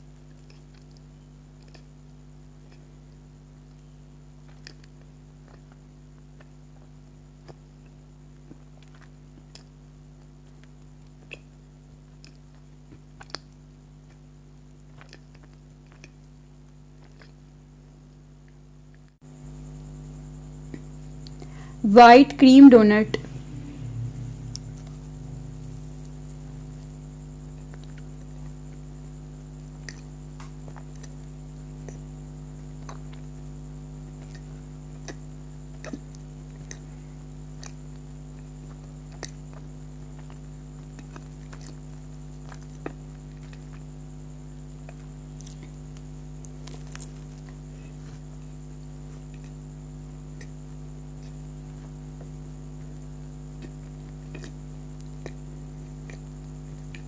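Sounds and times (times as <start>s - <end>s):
steady electrical hum: 0.0s - 57.0s
person chewing with mouth clicks: 0.4s - 1.9s, 8.5s - 14.2s, 14.8s - 16.3s, 17.0s - 17.4s, 29.7s - 32.1s, 34.2s - 36.9s, 37.6s - 37.8s, 38.4s - 43.8s, 44.8s - 48.2s, 49.1s - 49.6s, 50.3s - 50.6s, 53.5s - 57.0s.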